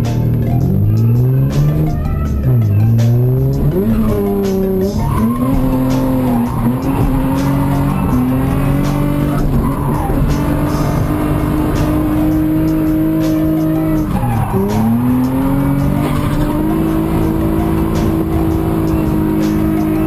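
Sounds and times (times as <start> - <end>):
car engine revving: 0.0 - 20.0
music with a steady beat: 0.0 - 20.0
tyre squeal: 4.9 - 11.2, 13.4 - 16.9.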